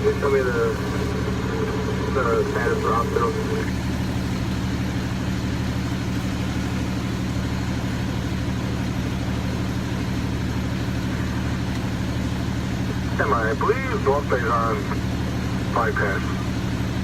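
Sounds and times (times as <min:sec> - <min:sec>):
vehicle engine droning: 0:00.0 - 0:17.0.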